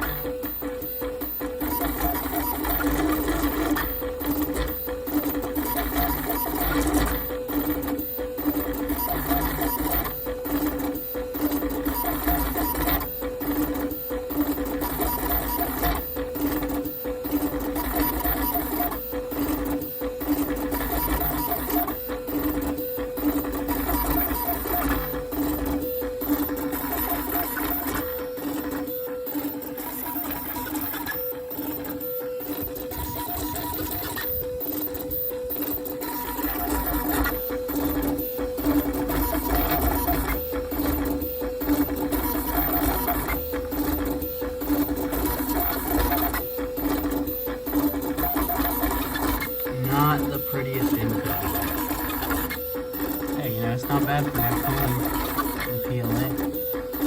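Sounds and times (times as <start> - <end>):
stepper motors whining: 41.8 - 56.6.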